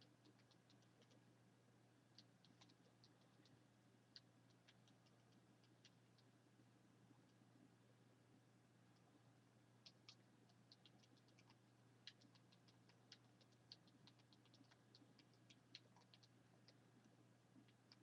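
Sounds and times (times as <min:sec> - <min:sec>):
faint light clicks and ticks: 0:02.1 - 0:06.3, 0:09.8 - 0:18.0.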